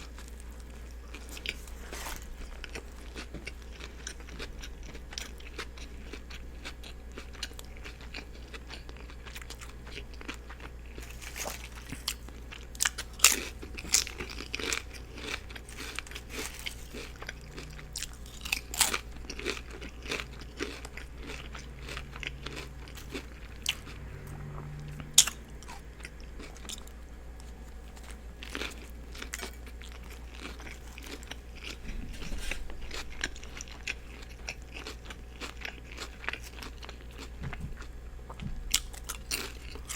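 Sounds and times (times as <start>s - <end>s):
sandwich crunching while chewed: 0.0s - 39.9s
steady low hum: 0.0s - 39.9s.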